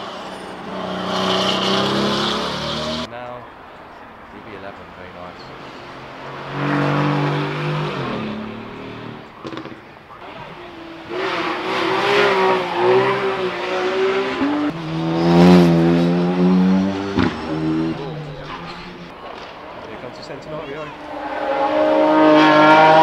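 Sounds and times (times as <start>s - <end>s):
car engine accelerating at high revs: 0.7s - 3.1s, 6.2s - 9.6s, 10.3s - 19.1s, 21.0s - 23.0s.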